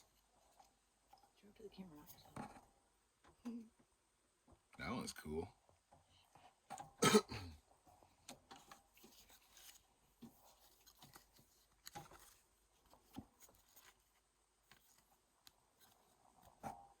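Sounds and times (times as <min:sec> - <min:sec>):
trading cards tapping and rustling: 0:08.2 - 0:17.0.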